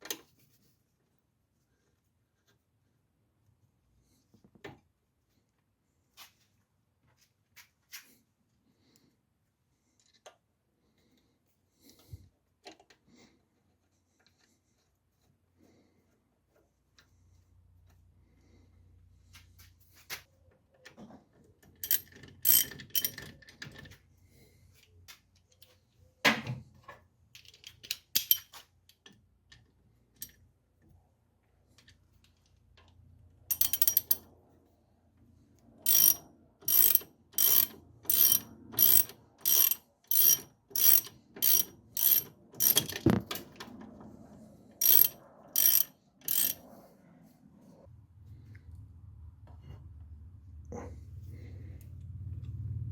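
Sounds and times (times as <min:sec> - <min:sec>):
socket ratchet clicking: 0:21.8 - 0:23.2, 0:33.5 - 0:34.2, 0:35.9 - 0:43.2, 0:44.8 - 0:46.6
metallic clinks of tools: 0:33.5 - 0:34.2, 0:35.9 - 0:43.0, 0:44.8 - 0:46.6.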